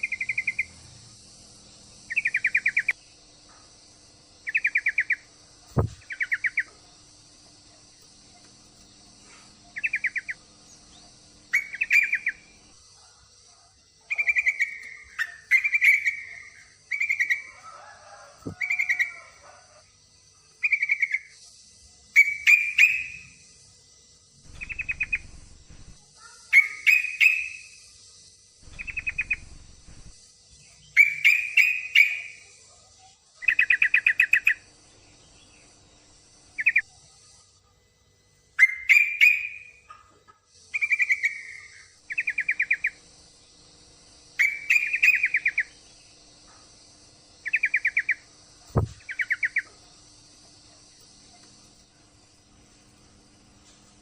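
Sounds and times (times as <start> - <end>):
faint high-pitched buzz: 0.0 - 54.0
bird chattering calls: 24.5 - 27.7, 28.6 - 30.1.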